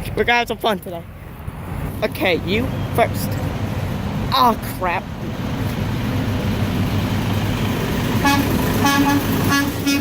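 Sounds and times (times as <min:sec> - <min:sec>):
road traffic rumbling: 0:00.0 - 0:10.0
truck horn honks: 0:08.2 - 0:10.0.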